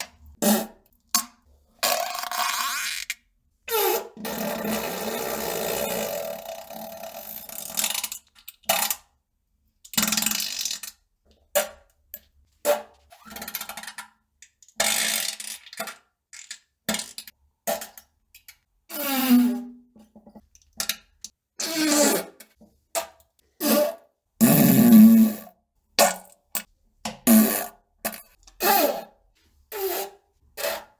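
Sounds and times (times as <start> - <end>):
fart sounds: 23.6 - 25.6, 27.3 - 28.2.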